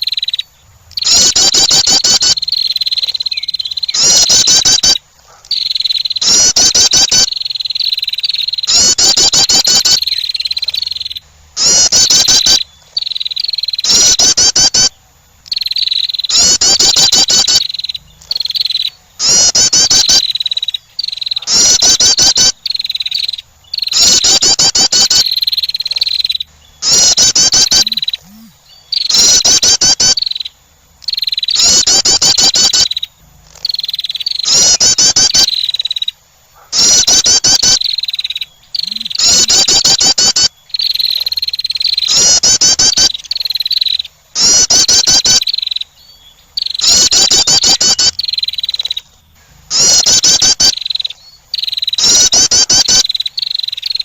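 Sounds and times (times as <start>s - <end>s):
small chirps: 0.0s - 36.2s, 36.8s - 46.0s
wren harsh pulsed trill: 23.9s - 30.2s, 38.8s - 40.5s
high thin steady tone: 27.4s - 28.6s.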